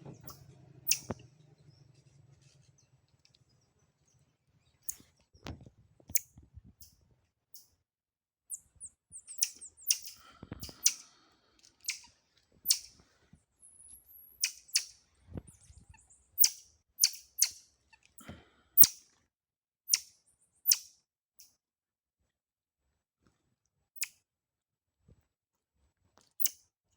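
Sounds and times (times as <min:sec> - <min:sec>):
faint high squeaks: 0:00.0 - 0:02.9.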